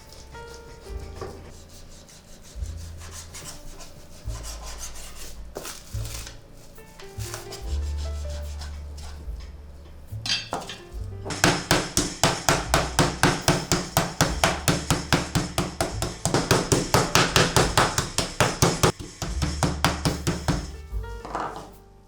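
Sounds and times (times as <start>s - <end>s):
background music: 0.0s - 22.0s
meat mallet pounding meat: 11.0s - 21.6s.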